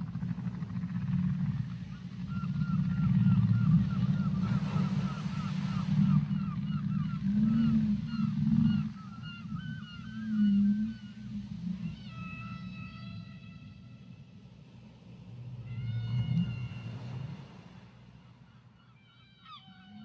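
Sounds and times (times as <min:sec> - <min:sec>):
low underwater rumbling drone: 0:00.0 - 0:18.9
whale moans: 0:00.1 - 0:14.3, 0:15.4 - 0:17.7, 0:19.1 - 0:20.0
whale chirping calls: 0:02.2 - 0:13.8, 0:15.6 - 0:17.4, 0:18.8 - 0:20.0.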